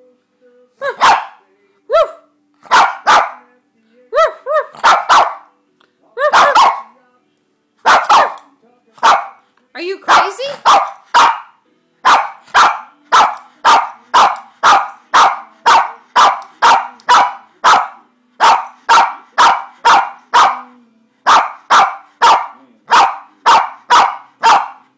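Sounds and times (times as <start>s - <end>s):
small dog barking: 0.8s - 1.4s, 2.7s - 3.4s, 4.2s - 5.5s, 6.2s - 7.0s, 7.9s - 8.4s, 9.0s - 9.4s, 10.1s - 20.7s, 21.3s - 24.8s.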